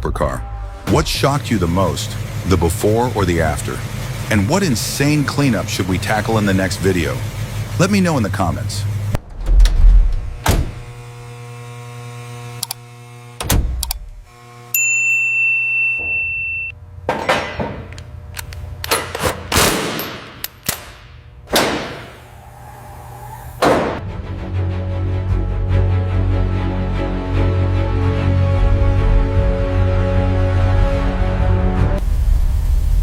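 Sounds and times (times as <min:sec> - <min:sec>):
high beep: 0:15.3 - 0:16.7
whooshes: 0:21.8 - 0:24.0.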